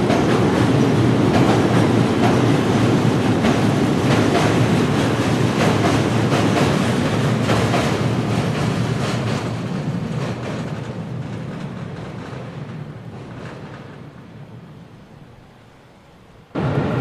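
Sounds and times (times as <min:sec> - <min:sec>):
train wheels clattering over rail joints: 0:00.0 - 0:14.1.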